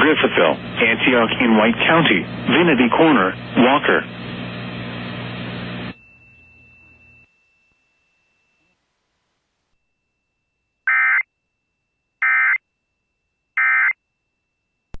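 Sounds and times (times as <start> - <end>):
faint steady high tone: 5.9 - 15.0.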